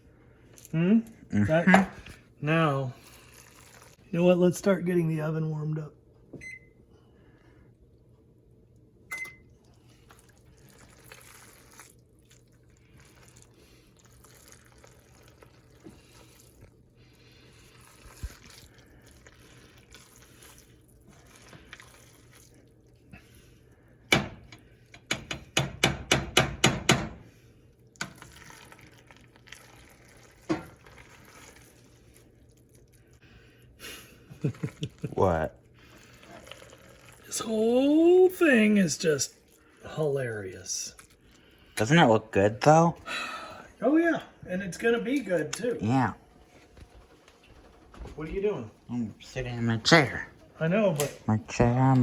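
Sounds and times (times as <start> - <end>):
oven electronic beep: 6.4 - 6.8, 9.1 - 9.5
utensils and dishes knocking: 24.1 - 27.2.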